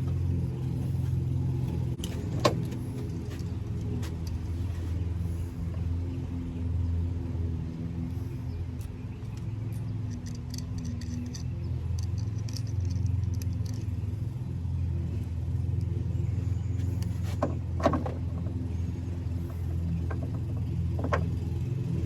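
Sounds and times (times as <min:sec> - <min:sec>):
low engine-like hum: 0:00.0 - 0:22.0
light metallic clinks: 0:08.8 - 0:14.5.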